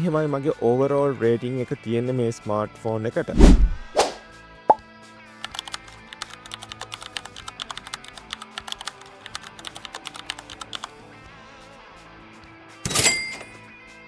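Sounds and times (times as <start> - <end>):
soft background music: 0.0 - 14.0
rapid keyboard typing: 5.4 - 10.9.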